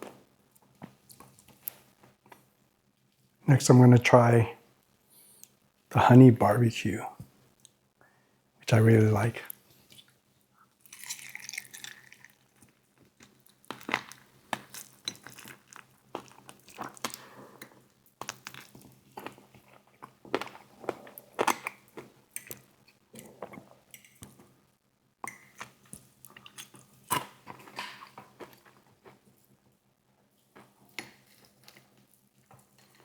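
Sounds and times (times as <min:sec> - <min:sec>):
chewing crunchy chicken wings: 0:10.9 - 0:22.2.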